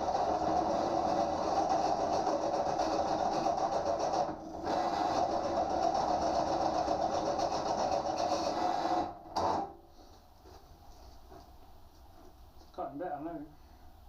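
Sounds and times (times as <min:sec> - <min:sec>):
pillar drill cutting steel: 0:00.0 - 0:09.2.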